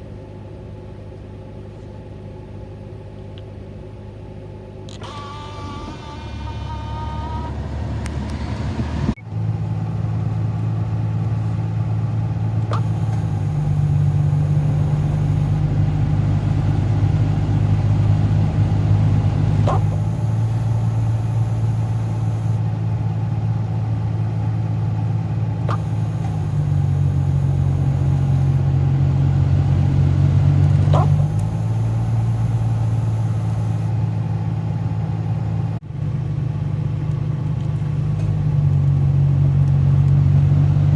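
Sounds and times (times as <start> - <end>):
car engine idling: 0.0 - 40.9
air conditioning click and squeak: 4.9 - 7.7, 19.6 - 21.6.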